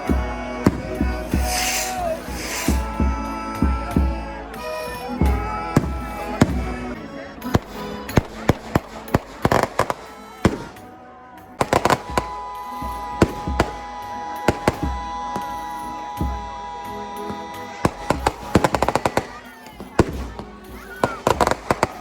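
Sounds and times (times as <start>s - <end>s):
music: 0.0s - 22.0s
sharp bangs and cracks: 5.3s - 15.6s, 17.2s - 22.0s.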